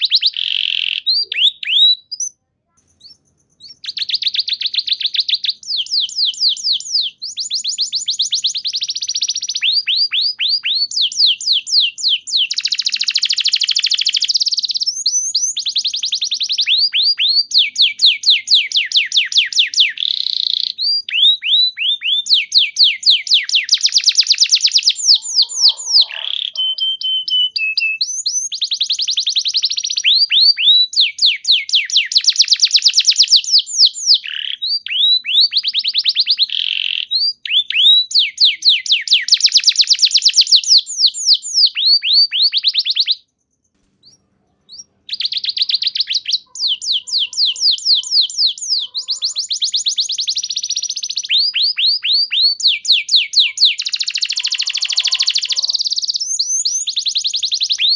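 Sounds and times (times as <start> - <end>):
canary singing trills: 0.0 - 57.9.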